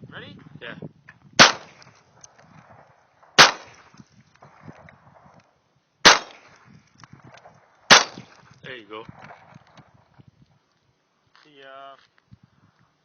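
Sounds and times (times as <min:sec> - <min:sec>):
pistol shots echoing: 0:01.4 - 0:01.9, 0:03.4 - 0:04.0, 0:06.0 - 0:06.6, 0:07.9 - 0:08.4.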